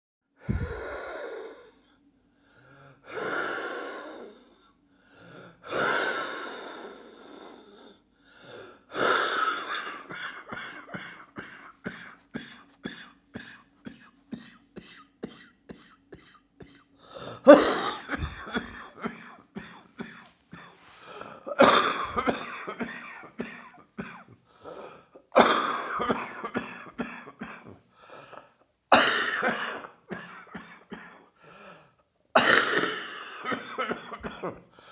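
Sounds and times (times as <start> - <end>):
long breaths: 0.4 - 9.8
person coughing: 9.0 - 27.8, 28.9 - 31.4, 32.4 - 34.8.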